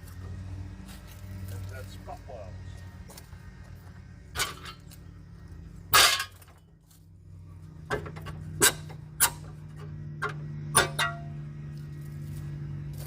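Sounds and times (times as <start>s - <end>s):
steady low hum: 0.0s - 13.0s
sharp knocks and clicks on car body: 7.8s - 11.2s.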